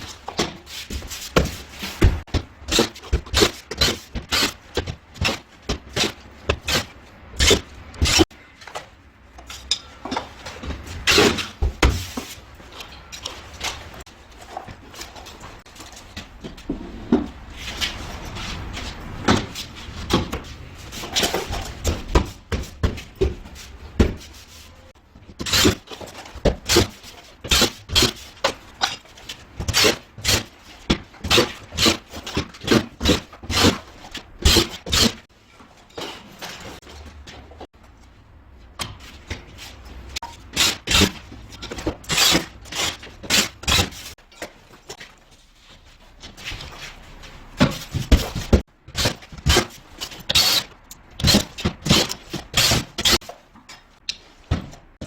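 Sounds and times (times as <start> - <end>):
knocks and clatter of tools: 0.0 - 24.4, 46.1 - 55.0.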